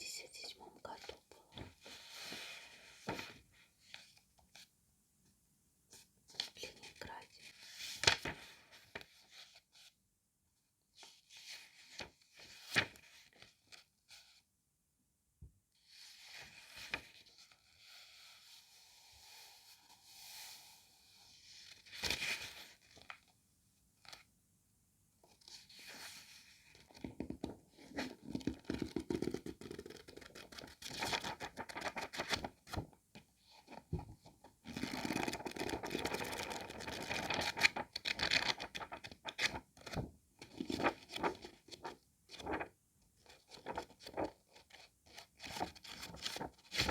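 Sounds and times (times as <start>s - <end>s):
book pages rustling: 34.8s - 42.7s, 43.4s - 46.9s.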